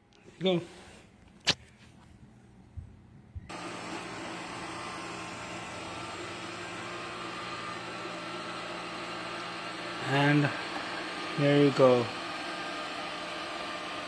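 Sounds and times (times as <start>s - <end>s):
robot vacuum whirring hum: 3.5s - 14.0s.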